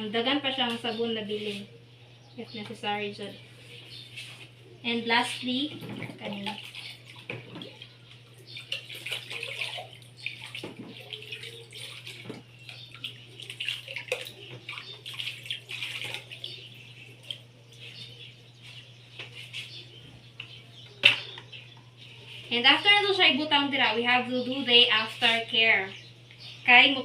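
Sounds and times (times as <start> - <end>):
water splashing and trickling: 5.6 - 18.8.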